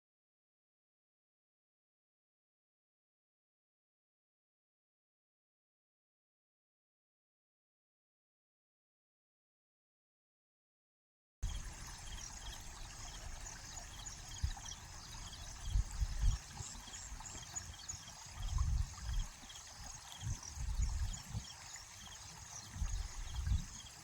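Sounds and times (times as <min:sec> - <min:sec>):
river water flowing: 0:11.4 - 0:24.0.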